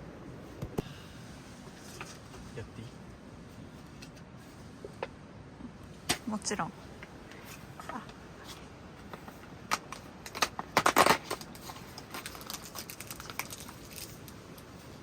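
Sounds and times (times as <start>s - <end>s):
small hard objects clicking: 9.7s - 14.8s.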